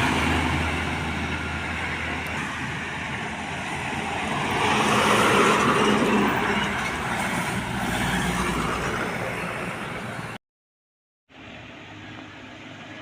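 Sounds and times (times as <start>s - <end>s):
heavy truck passing: 0.0s - 10.4s.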